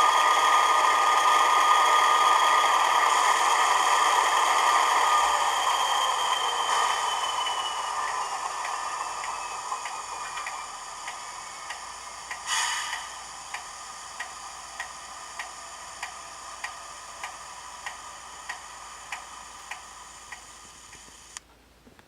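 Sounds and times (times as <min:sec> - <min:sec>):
regular ticks: 0:08.5 - 0:21.6
short burst of hiss: 0:12.4 - 0:13.4
turbocharger whistle over hiss: 0:12.4 - 0:13.4.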